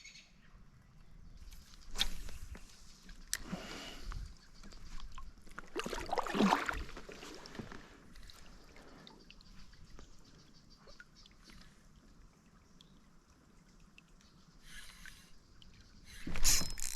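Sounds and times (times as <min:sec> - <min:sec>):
water splashing and sloshing: 0:01.4 - 0:16.9
water dripping: 0:04.1 - 0:16.9.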